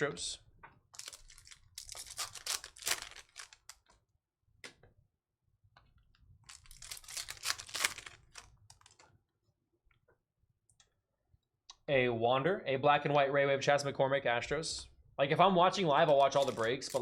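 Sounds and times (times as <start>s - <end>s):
cards flipping and rustling: 1.0s - 3.9s, 6.5s - 9.0s, 16.1s - 17.0s.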